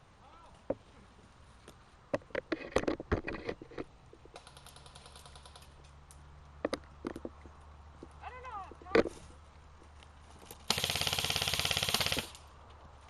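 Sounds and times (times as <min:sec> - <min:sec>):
airsoft gun shots: 0:10.7 - 0:12.4.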